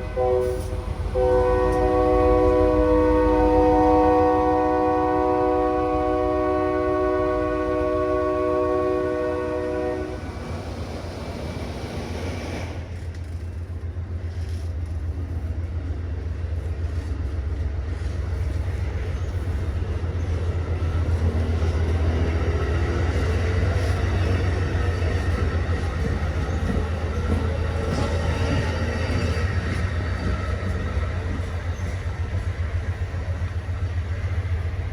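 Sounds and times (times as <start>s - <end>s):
train horn: 0.0s - 10.4s
train passing rumble: 0.0s - 34.9s.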